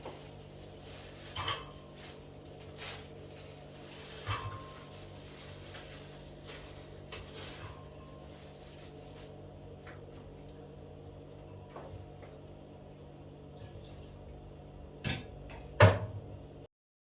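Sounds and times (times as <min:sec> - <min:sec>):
utensils clinking against dishes: 0:01.0 - 0:08.7.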